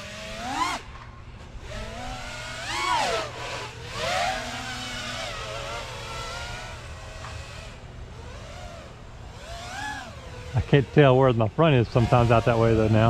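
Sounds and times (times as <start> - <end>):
drone motors whining: 0.0 - 13.0.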